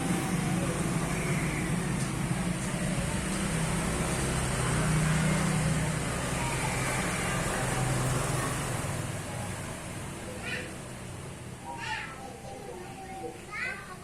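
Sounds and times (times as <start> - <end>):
engine humming: 0.0 - 14.0
road traffic: 0.0 - 14.0.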